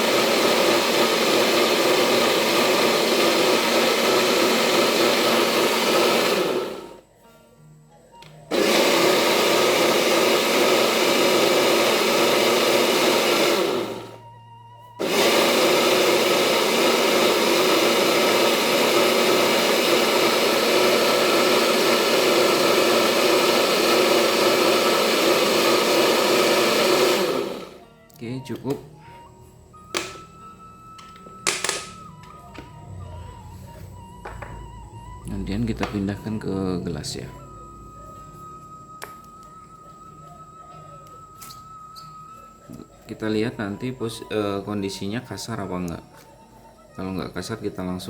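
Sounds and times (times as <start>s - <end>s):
electric blender running: 0.0s - 7.1s, 8.5s - 14.3s, 14.9s - 27.8s.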